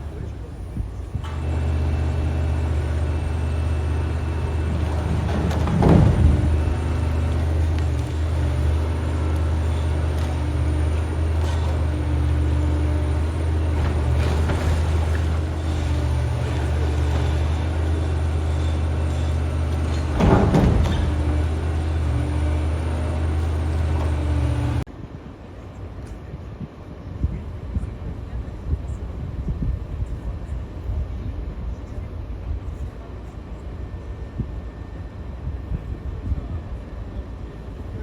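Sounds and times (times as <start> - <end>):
excavator diesel engine: 0.0 - 24.9.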